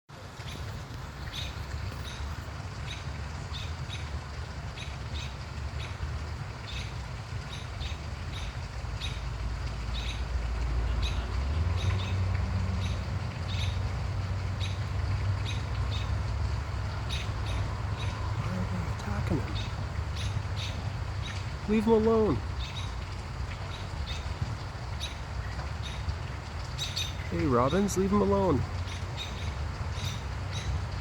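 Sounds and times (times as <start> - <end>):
robin alarm calls: 1.3 - 2.2, 7.5 - 9.2, 9.9 - 10.3, 11.0 - 12.2, 12.8 - 13.9, 14.6 - 14.8, 15.4 - 16.3, 16.9 - 23.0, 23.7 - 24.4, 25.0 - 26.1, 26.8 - 30.8.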